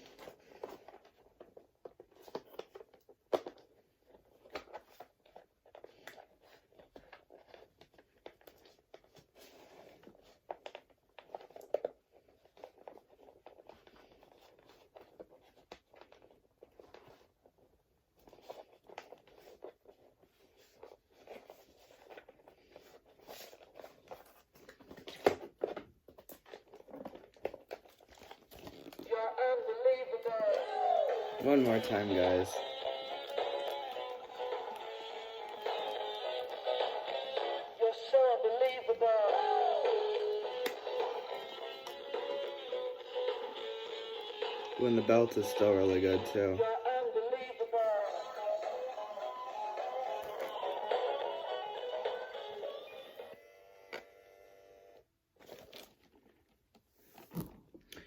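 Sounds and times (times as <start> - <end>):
plastic packaging crinkling: 0.0 - 29.2, 30.6 - 38.9, 55.4 - 58.0.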